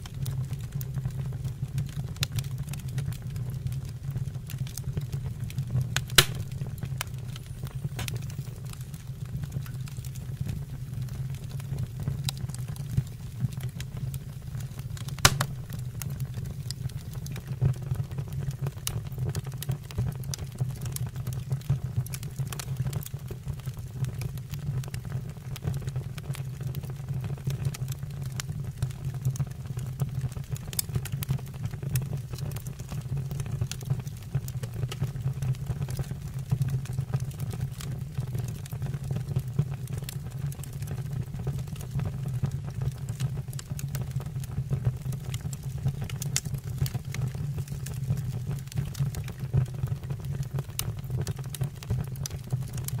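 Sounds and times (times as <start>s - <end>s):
fire crackling and popping: 0.0s - 53.0s.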